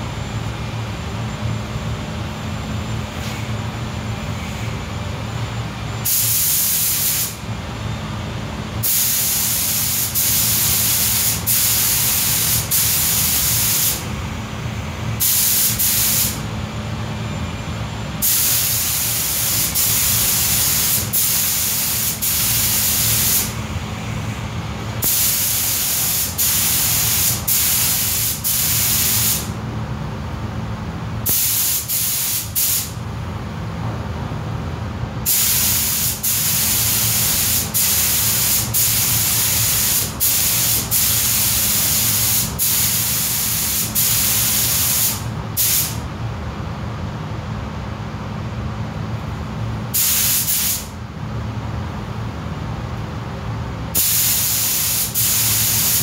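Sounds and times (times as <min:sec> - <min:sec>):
steady low hum: 0:00.0 - 0:56.0
paint spray gun hissing: 0:06.1 - 0:07.4, 0:08.8 - 0:14.0, 0:15.2 - 0:16.4, 0:18.2 - 0:23.6, 0:25.0 - 0:29.5, 0:31.3 - 0:33.0, 0:35.3 - 0:46.0, 0:50.0 - 0:50.9, 0:54.0 - 0:56.0.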